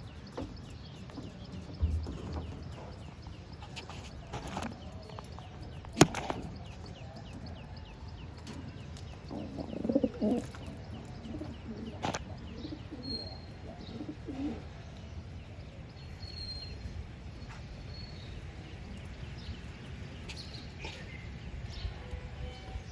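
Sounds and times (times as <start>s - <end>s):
pigeons cooing: 9.2s - 14.8s.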